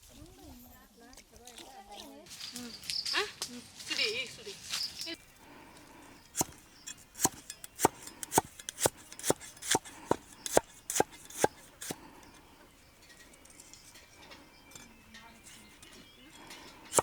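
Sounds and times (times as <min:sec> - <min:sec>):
knife chopping on board: 0:06.4 - 0:06.6, 0:07.2 - 0:12.0.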